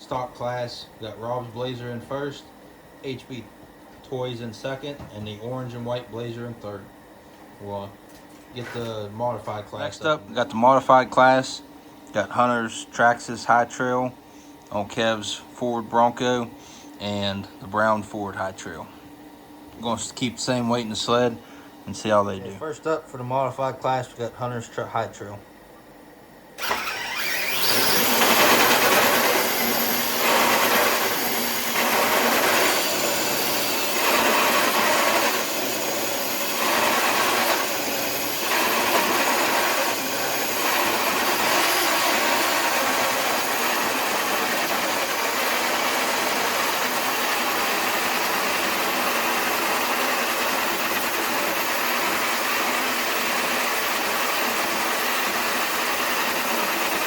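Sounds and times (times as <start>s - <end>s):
electric motor whining under load: 26.6s - 57.0s.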